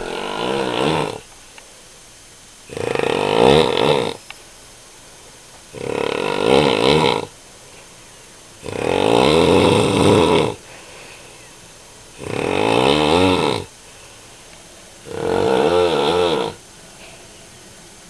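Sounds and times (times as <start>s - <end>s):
man snoring loudly: 0.0s - 1.2s, 2.7s - 4.2s, 5.8s - 7.3s, 8.6s - 10.6s, 12.2s - 13.7s, 15.0s - 16.6s.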